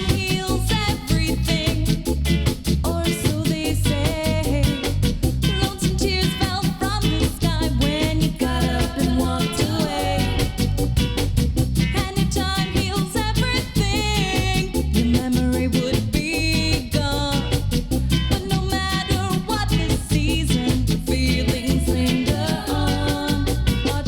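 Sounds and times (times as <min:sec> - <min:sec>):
reggae music from vinyl record: 0:00.0 - 0:24.0.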